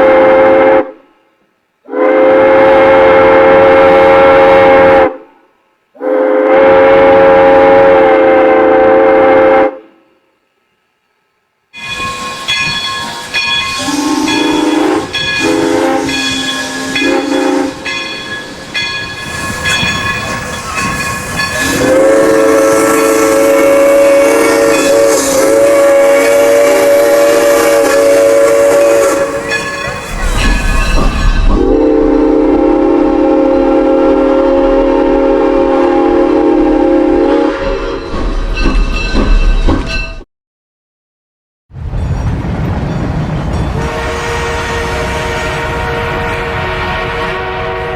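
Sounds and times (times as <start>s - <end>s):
steam hissing: 11.8s - 34.8s
locomotive chime whistle: 11.8s - 40.2s.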